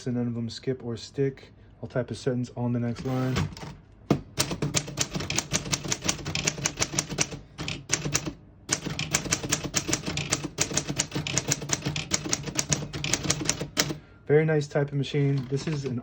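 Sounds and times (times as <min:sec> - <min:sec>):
typewriter keys clacking: 0:04.4 - 0:14.0, 0:15.4 - 0:16.0.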